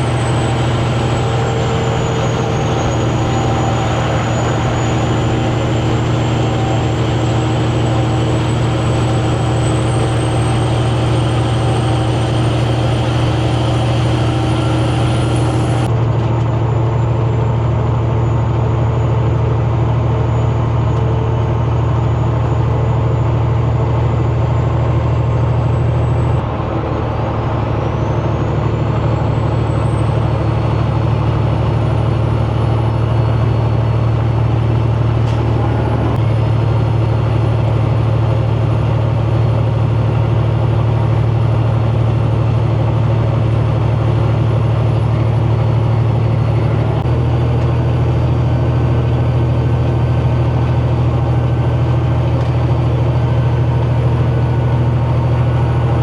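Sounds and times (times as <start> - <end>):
turbo whistle: 0.0 - 15.9
diesel truck engine running: 0.0 - 56.0.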